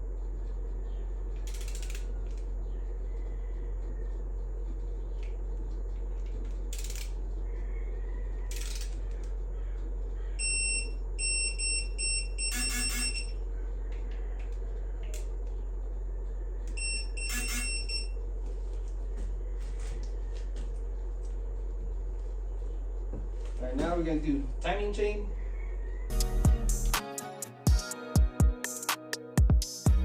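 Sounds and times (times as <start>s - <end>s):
steady hum: 0.0s - 30.0s
torque wrench beeping: 1.4s - 2.1s, 6.7s - 7.2s, 10.4s - 13.4s, 16.8s - 18.2s.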